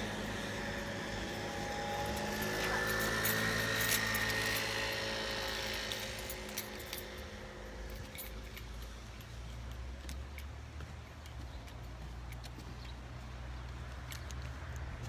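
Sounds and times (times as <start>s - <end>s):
aircraft engine drone: 0.0s - 8.5s
small clicks: 13.9s - 14.9s.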